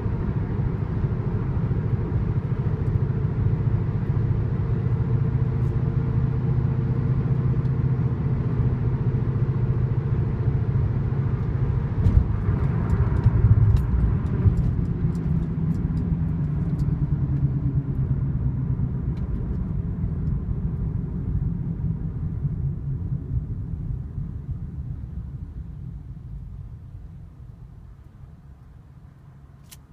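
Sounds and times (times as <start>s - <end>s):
road noise: 0.0s - 29.9s.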